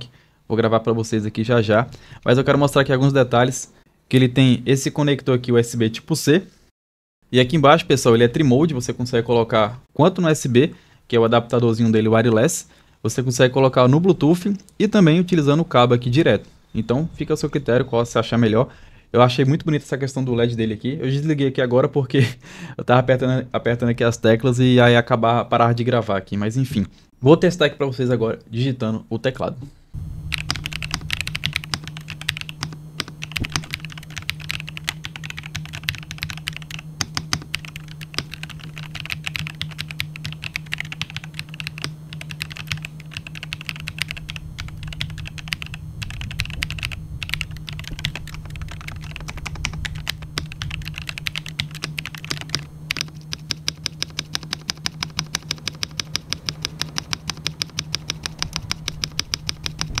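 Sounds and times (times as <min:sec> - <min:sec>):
steady low hum: 0:07.3 - 1:00.0
mechanical keyboard typing: 0:30.3 - 1:00.0.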